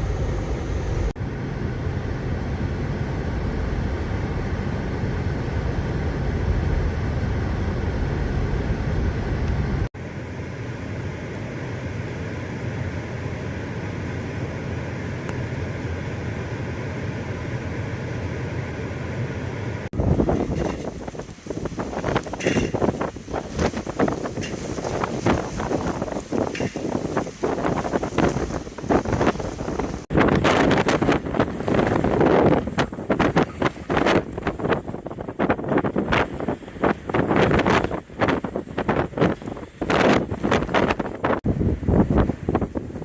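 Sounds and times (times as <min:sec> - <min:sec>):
vehicle road and engine noise: 0:00.0 - 0:43.0
wind buffeting microphone: 0:19.9 - 0:43.0.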